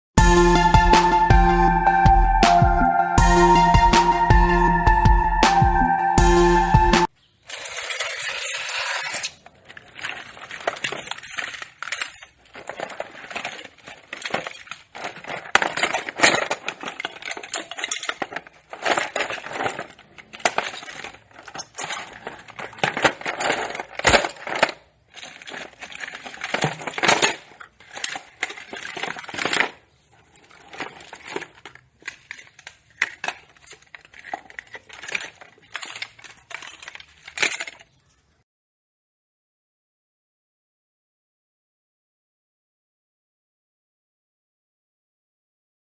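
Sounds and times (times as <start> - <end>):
small hard objects clattering: 7.2 - 38.2.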